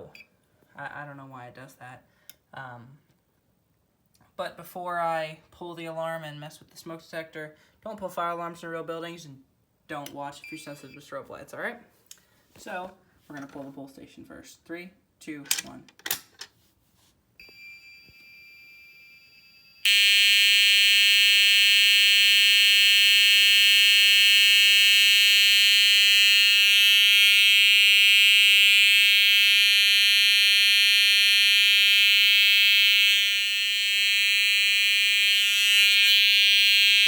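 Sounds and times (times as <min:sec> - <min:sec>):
fire alarm horn steady tone: 0:17.4 - 0:37.0.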